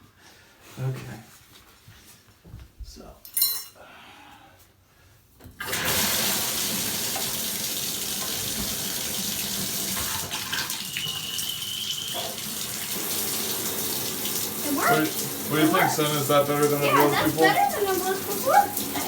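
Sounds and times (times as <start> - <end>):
shower water running: 5.6 - 19.0.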